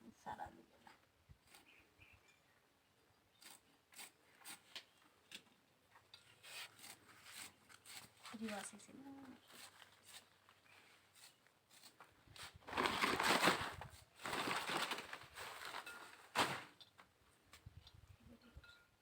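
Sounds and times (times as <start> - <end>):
banana flower rustling and scraping: 6.2 - 16.8.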